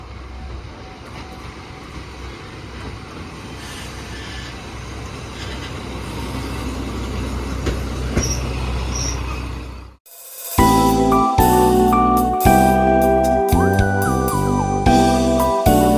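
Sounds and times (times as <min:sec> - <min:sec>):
railcar diesel engine: 0:00.0 - 0:15.9
wheels on rails: 0:00.4 - 0:10.0.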